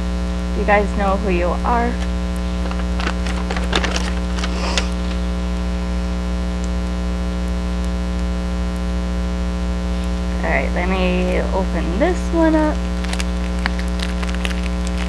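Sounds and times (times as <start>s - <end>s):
electrical hum: 0.0s - 15.0s
handling clicks and rustles: 2.0s - 5.3s, 12.5s - 15.0s.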